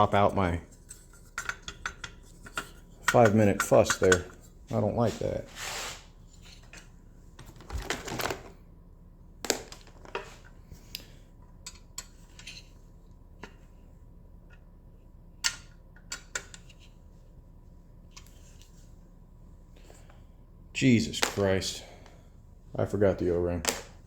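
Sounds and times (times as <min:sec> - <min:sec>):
rustling of parts: 0:00.1 - 0:08.6, 0:09.4 - 0:12.8
sharp clicks and clinks of parts: 0:00.9 - 0:04.4, 0:11.6 - 0:12.6.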